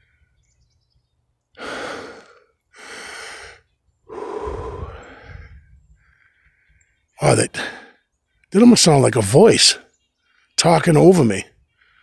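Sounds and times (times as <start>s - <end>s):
man breathing heavily: 0.0s - 0.5s, 1.5s - 8.4s, 11.6s - 12.0s.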